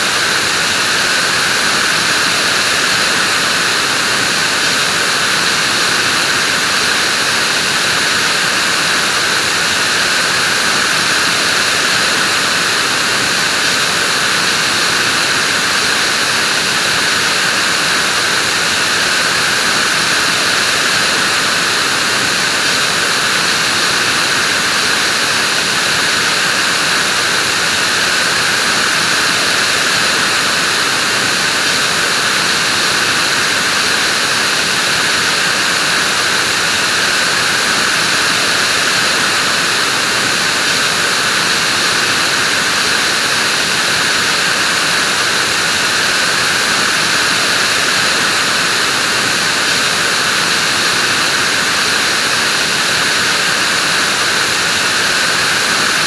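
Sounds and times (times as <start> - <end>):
vacuum cleaner running: 0.0 - 56.0.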